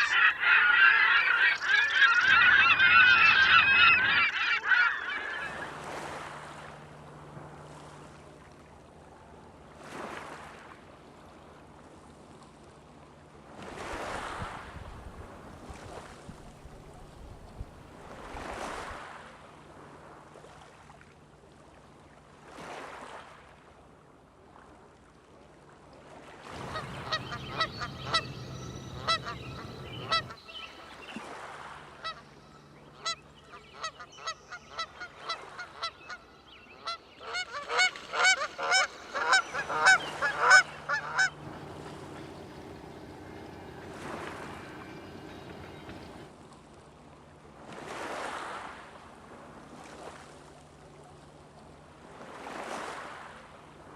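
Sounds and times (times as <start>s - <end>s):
birds honking: 0.0s - 6.3s, 26.6s - 46.3s
waves washing on shore: 0.0s - 12.0s, 13.4s - 20.9s, 26.1s - 32.8s, 37.2s - 50.8s, 51.9s - 53.9s.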